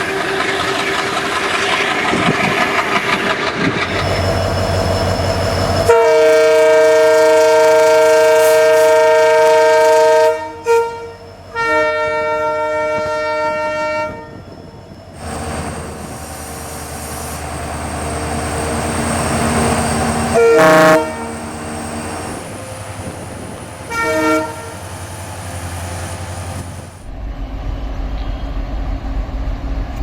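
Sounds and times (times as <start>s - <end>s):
diesel locomotive engine: 0.0s - 30.0s
locomotive air horn blasts: 5.8s - 14.4s, 20.3s - 21.5s, 23.9s - 24.9s.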